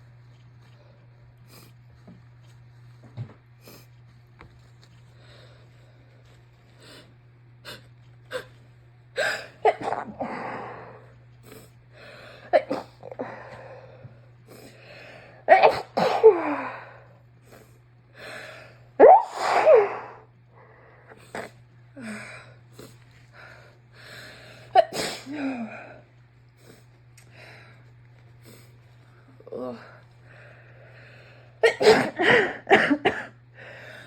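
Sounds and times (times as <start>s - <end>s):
woman sneezing: 9.2s - 10.2s, 15.5s - 16.6s, 19.0s - 20.2s, 24.8s - 25.8s, 31.6s - 33.1s.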